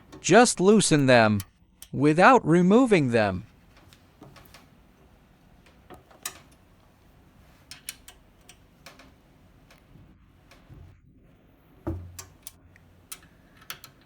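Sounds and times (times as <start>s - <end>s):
wrench clicking and tapping on screws: 12.1s - 14.0s.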